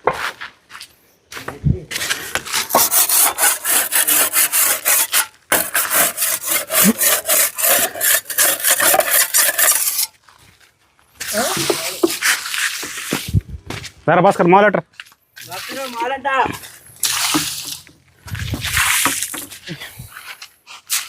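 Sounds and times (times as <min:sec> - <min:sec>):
hand tool rasping hard surface: 0:02.0 - 0:10.1.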